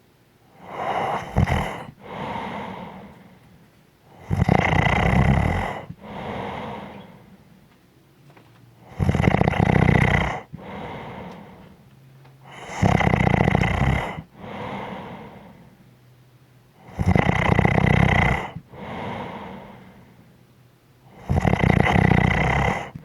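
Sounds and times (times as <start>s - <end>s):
person snoring: 0.6s - 3.4s, 4.1s - 7.4s, 8.8s - 11.7s, 12.5s - 15.7s, 16.8s - 20.2s, 21.1s - 23.0s
soft breath out: 0.6s - 4.3s, 5.6s - 7.6s, 10.2s - 13.0s, 14.0s - 15.9s, 18.4s - 20.4s.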